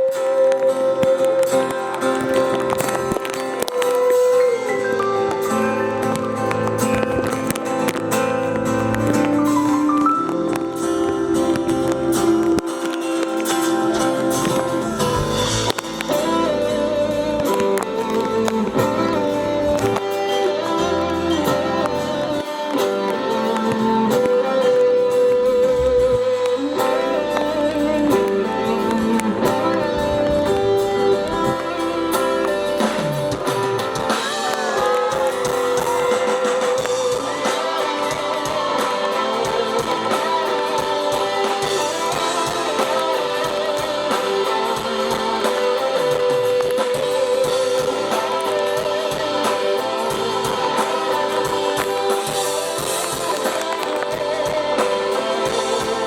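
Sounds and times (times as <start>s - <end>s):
slow live guitar music: 0.0s - 56.0s.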